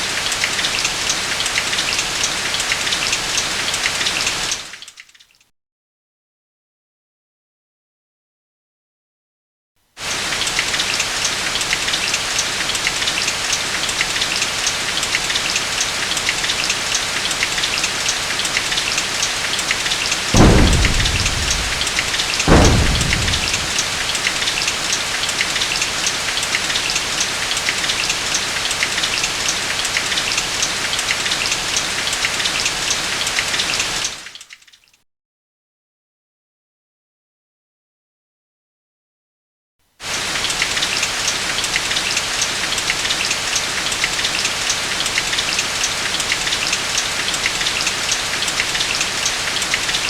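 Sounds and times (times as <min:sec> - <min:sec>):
heavy rain: 0:10.0 - 0:31.3
thunder claps rumbling: 0:20.4 - 0:24.7.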